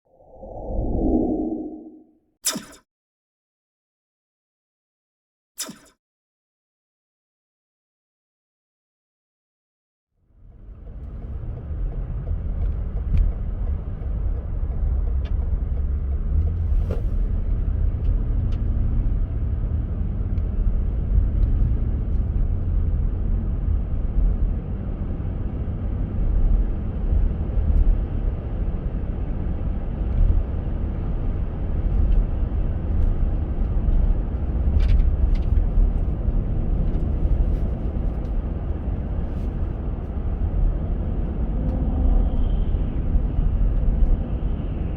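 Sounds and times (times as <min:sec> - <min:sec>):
car tyres and engine rumbling: 0:10.4 - 0:44.9.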